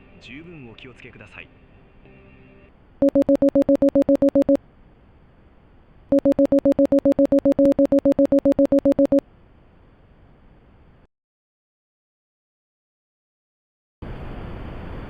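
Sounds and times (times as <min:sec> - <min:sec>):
two-pitch electronic alert beeping: 0:03.0 - 0:04.6, 0:06.1 - 0:09.2.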